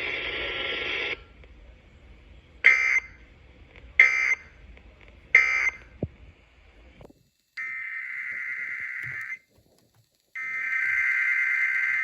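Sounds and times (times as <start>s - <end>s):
radio hiss: 0.0s - 12.0s
short data bursts: 7.3s - 9.5s.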